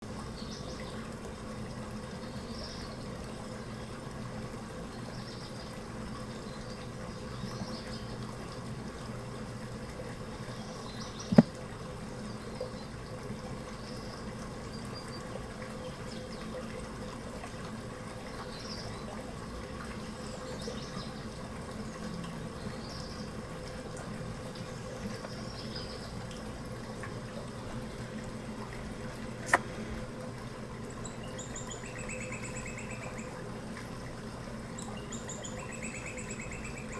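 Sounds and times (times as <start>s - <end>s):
flowing water noise: 0.0s - 36.9s
sharp click: 29.4s - 29.8s.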